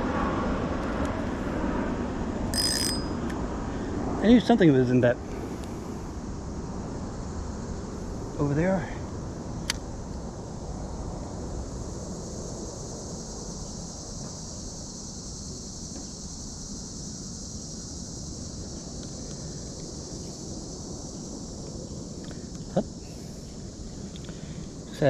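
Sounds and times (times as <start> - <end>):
wind rumble on microphone: 0.0 - 25.0
high hiss: 2.3 - 25.0
sharp click: 9.6 - 9.8.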